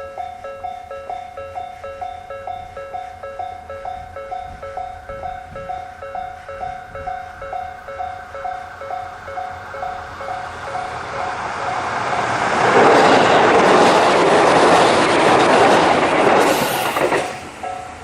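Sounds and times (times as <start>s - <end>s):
crossing alarm bell: 0.0s - 18.0s
train wheels passing: 0.4s - 18.0s
brief hiss: 16.4s - 17.4s.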